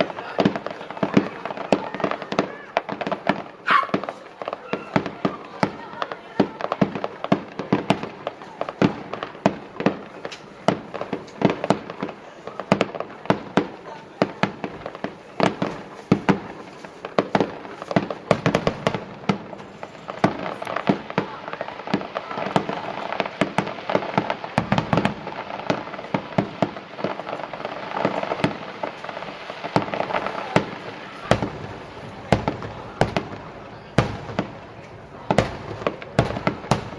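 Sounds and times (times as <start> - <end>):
fireworks shells bursting: 6.8 - 13.8, 14.4 - 21.1.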